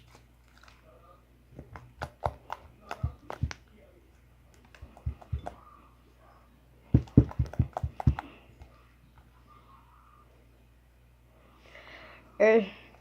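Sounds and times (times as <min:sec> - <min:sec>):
knocks and taps of handled objects: 0:04.7 - 0:05.6, 0:06.9 - 0:08.7.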